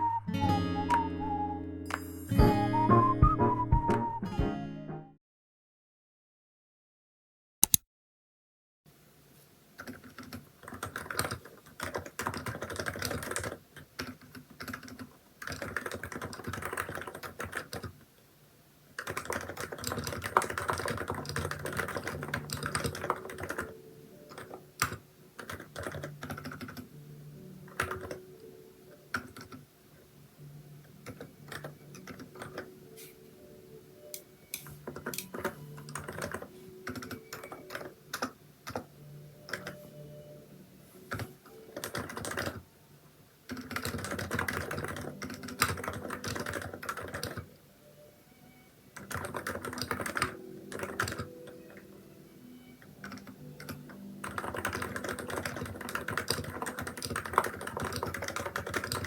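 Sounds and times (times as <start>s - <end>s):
keyboard typing: 9.8s - 18.0s, 19.0s - 26.9s, 27.7s - 29.6s, 31.0s - 33.1s, 34.0s - 40.2s, 41.1s - 42.6s, 43.5s - 47.6s, 49.0s - 52.0s, 52.6s - 59.0s.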